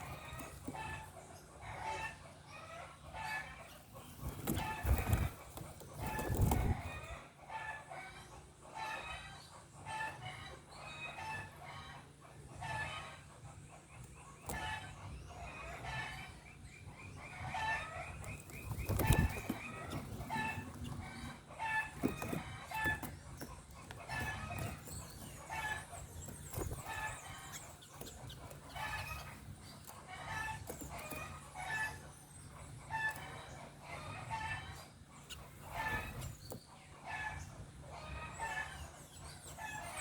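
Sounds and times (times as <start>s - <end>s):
birds calling: 0.0s - 40.0s
rapid bird trill: 15.4s - 37.5s.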